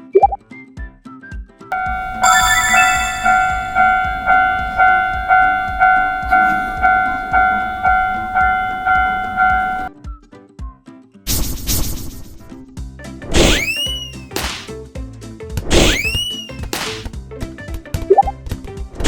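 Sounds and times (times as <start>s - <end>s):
railroad crossing bell ringing: 1.8s - 9.9s.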